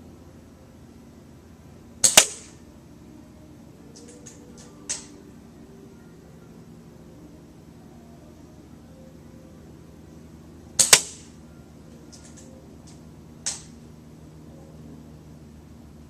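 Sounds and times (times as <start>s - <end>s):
airsoft rifle cracks: 2.0s - 2.6s, 4.0s - 5.2s, 10.8s - 11.3s, 13.4s - 13.7s.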